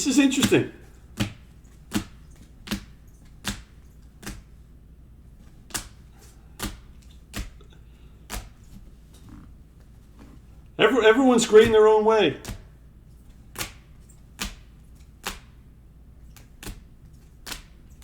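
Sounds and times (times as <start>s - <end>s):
cards tapping down: 0.2s - 4.5s, 5.4s - 8.9s.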